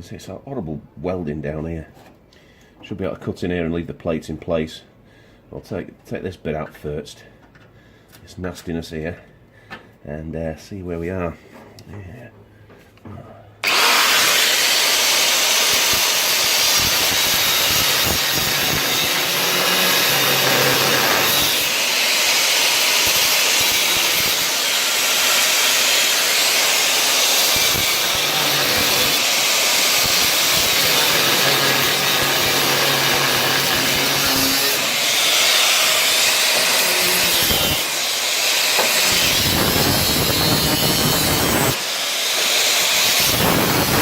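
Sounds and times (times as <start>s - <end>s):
power tool cutting steel: 13.6s - 44.0s.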